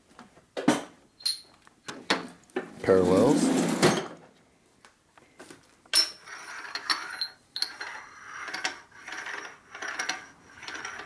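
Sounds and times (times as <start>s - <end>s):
metal-on-metal grating: 6.0s - 11.0s.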